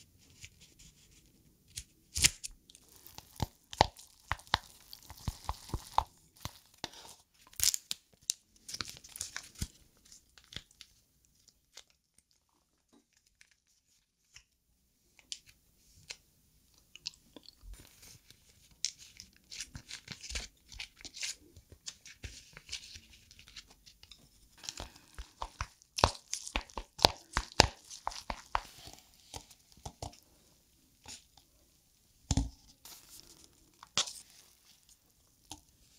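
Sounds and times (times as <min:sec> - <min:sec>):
wet crunching and chewing: 0:02.8 - 0:08.0, 0:16.9 - 0:17.7, 0:24.6 - 0:30.3.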